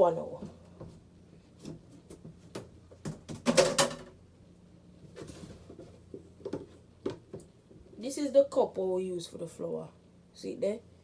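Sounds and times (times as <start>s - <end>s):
kitchen items knocking and clicking: 3.1s - 4.2s.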